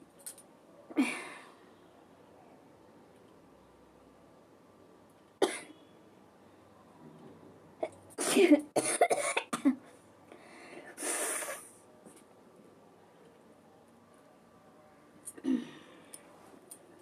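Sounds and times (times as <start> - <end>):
person sneezing and coughing: 8.2 - 9.8.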